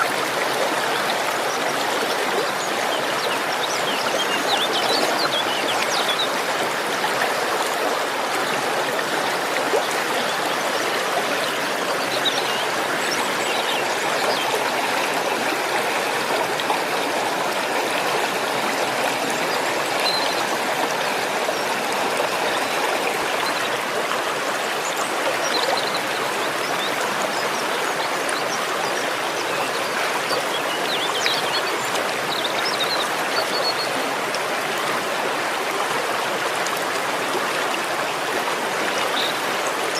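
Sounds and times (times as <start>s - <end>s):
waterfall rushing: 0.0s - 26.0s.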